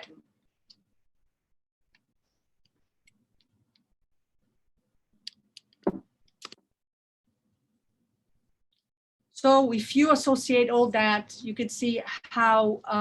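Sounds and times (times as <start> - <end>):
thumps: 5.8 - 6.1.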